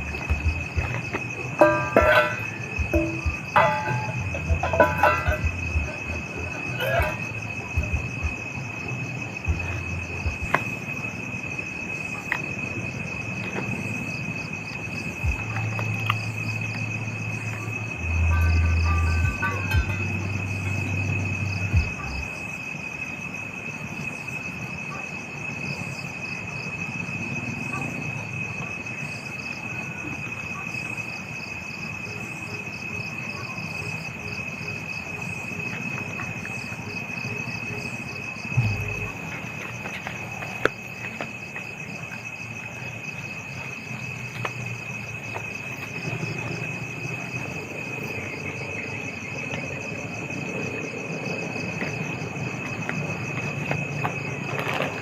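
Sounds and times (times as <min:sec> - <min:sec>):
crickets chirping: 0:00.0 - 0:55.0
dull thump: 0:38.6 - 0:39.2.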